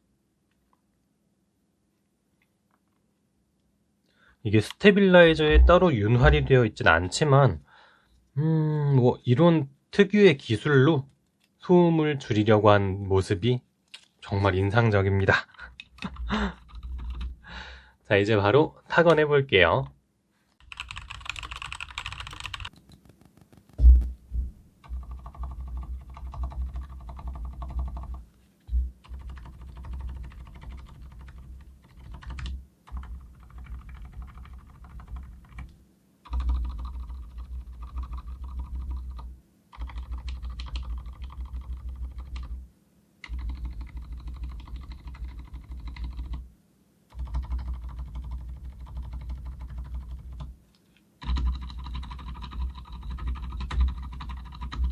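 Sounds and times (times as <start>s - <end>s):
muffled mechanical keyboard typing: 15.5s - 17.4s, 20.6s - 24.0s, 24.8s - 28.2s, 29.0s - 42.6s, 43.2s - 46.4s, 47.1s - 50.6s, 51.2s - 54.9s.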